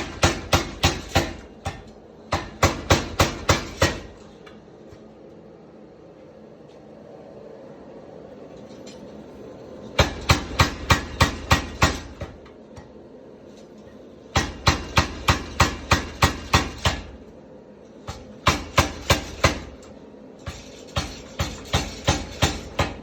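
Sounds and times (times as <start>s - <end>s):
power hammer striking metal: 0.0s - 4.2s, 10.0s - 12.9s, 14.3s - 17.2s, 18.1s - 23.0s.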